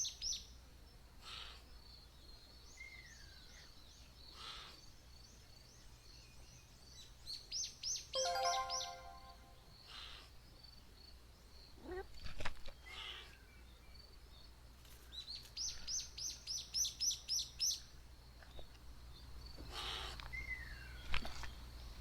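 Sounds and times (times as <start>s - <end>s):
call of steady pitches: 8.2s - 9.6s.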